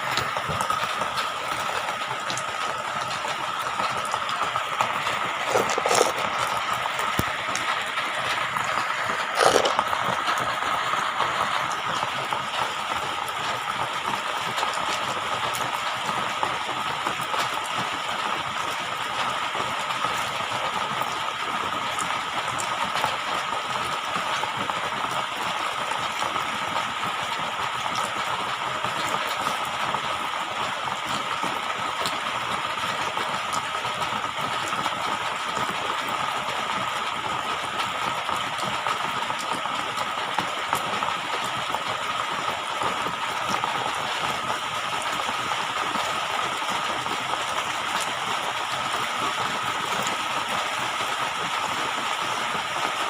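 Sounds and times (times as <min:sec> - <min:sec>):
rushing hissing water: 0:00.0 - 0:16.2.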